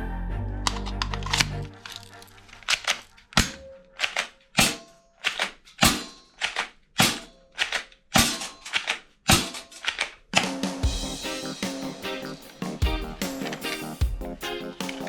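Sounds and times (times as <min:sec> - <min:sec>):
toy gun firing sharp shots: 0:02.6 - 0:10.2.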